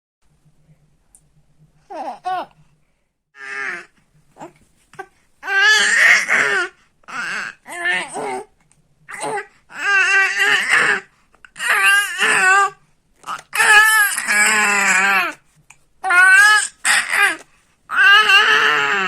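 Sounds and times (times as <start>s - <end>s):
baby squealing and babbling: 3.4s - 8.5s, 9.1s - 15.4s, 16.0s - 19.0s.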